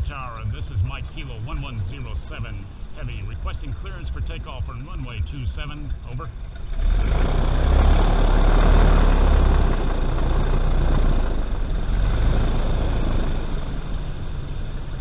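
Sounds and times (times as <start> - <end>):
airboat engine and propeller roaring: 0.0 - 15.0.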